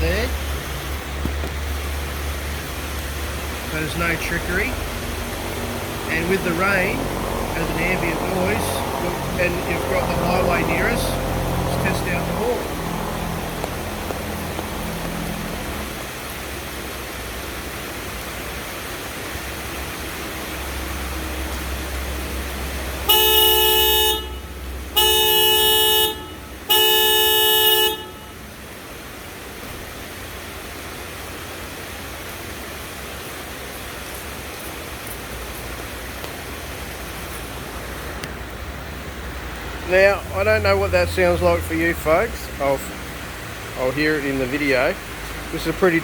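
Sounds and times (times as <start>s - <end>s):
car horns blasting: 23.0s - 28.5s.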